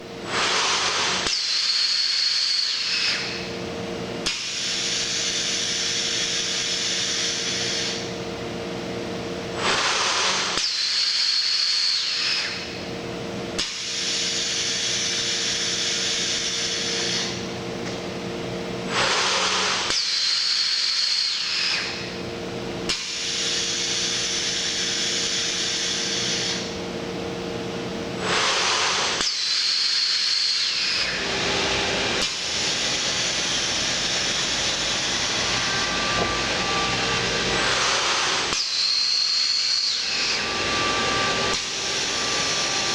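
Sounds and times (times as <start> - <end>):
machine hum with high hiss: 0.0 - 42.9
compressed air hiss bursts: 9.6 - 12.0, 18.9 - 21.3, 28.2 - 30.8.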